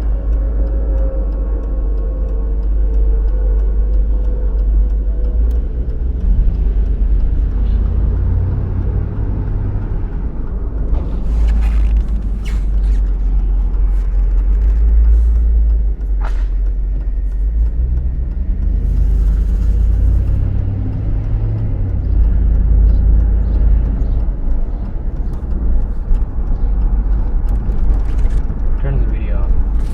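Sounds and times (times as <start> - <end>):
faint ticks: 0.0 - 29.9
vehicle engine rumble: 0.0 - 29.9
short creak: 11.0 - 15.5.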